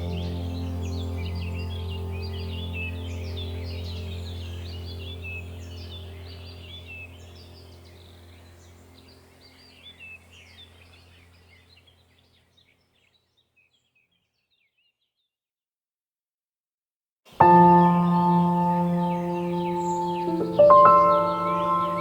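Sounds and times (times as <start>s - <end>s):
birds chirping and calling: 0.0s - 14.9s, 17.6s - 22.0s.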